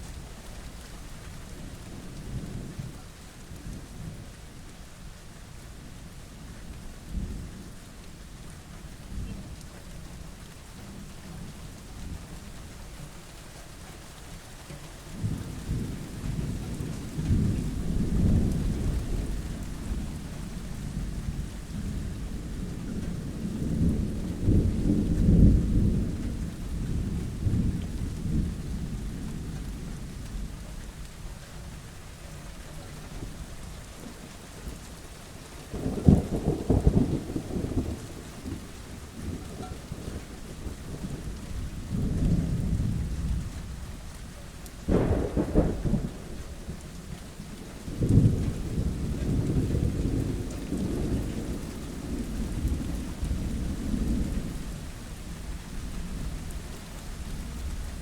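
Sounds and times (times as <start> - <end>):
steady rain: 0.0 - 58.0
rolling thunder: 15.2 - 30.8, 35.7 - 44.1, 44.8 - 58.0.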